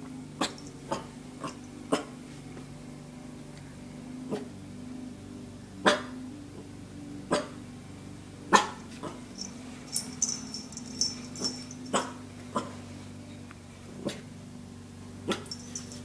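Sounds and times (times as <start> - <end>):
puppy huffing coughs: 11.9 - 12.8.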